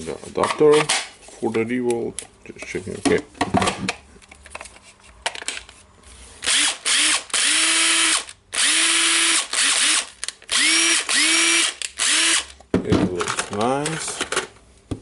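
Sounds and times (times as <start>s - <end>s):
impact driver motor whining: 6.4s - 12.5s.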